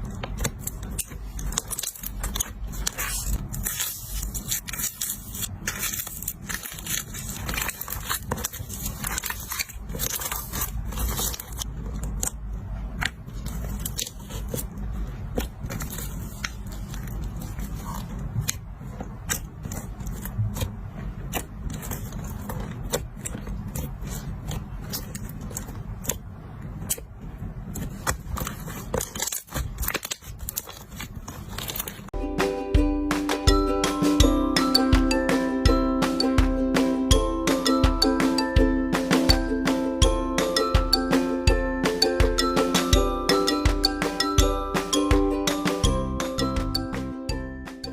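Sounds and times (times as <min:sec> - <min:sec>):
slime squishing and crackling: 0:00.0 - 0:27.0, 0:27.6 - 0:32.1.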